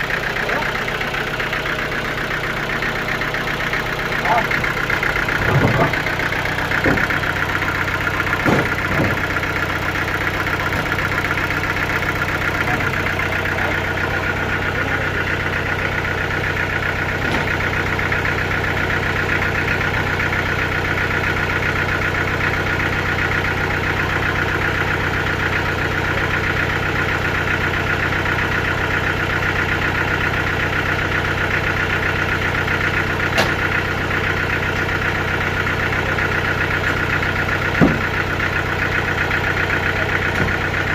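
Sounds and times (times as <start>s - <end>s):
sawmill engine running: 0.0s - 40.9s
short knocks: 5.3s - 7.4s, 8.3s - 9.5s, 37.8s - 38.1s.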